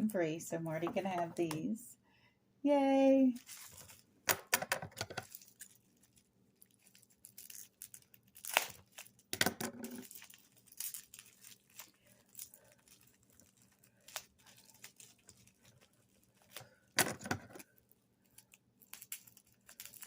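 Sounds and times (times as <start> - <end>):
packaging rustling and crinkling: 3.3 - 4.1, 5.0 - 20.0.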